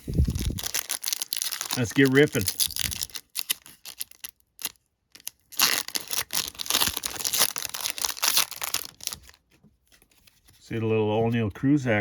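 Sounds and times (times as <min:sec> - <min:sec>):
wrapper tearing and crinkling: 0:00.0 - 0:09.4.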